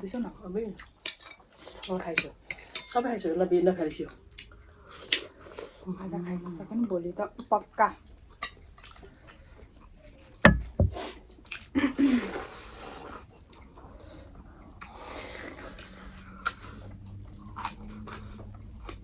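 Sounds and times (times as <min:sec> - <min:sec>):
eating sounds at a table: 0:00.7 - 0:03.0, 0:04.0 - 0:06.8, 0:08.2 - 0:09.5, 0:12.3 - 0:19.0
sharp knock: 0:10.5 - 0:11.0.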